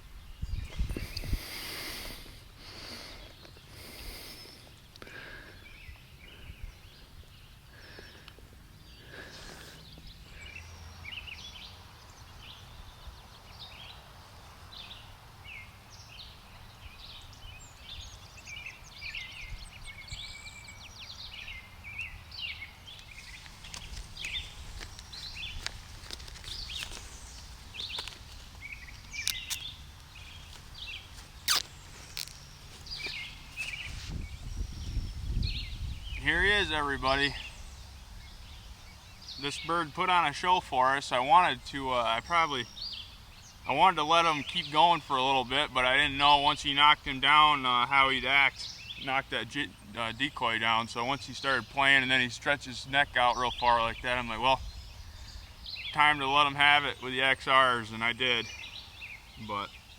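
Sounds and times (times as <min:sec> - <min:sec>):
low wind rumble: 0:00.0 - 0:03.1, 0:09.9 - 0:39.4
small birds chirping: 0:00.0 - 0:59.9
rustling: 0:23.0 - 0:34.5.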